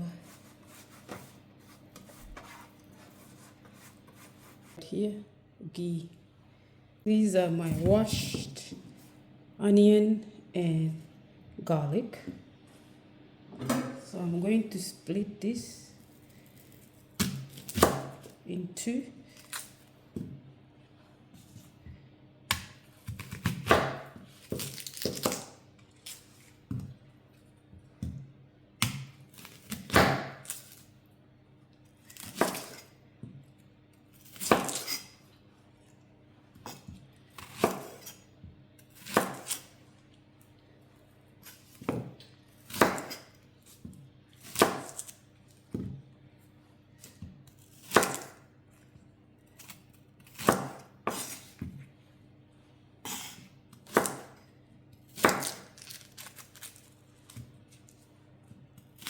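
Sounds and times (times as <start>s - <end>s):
knife cutting onions: 0.0s - 4.8s, 22.5s - 26.4s, 32.0s - 32.9s, 34.1s - 35.2s, 36.6s - 39.7s, 41.4s - 45.8s, 47.0s - 48.4s, 49.6s - 51.7s, 55.0s - 57.8s
dry onion skins crackling: 24.4s - 26.4s, 55.4s - 58.1s.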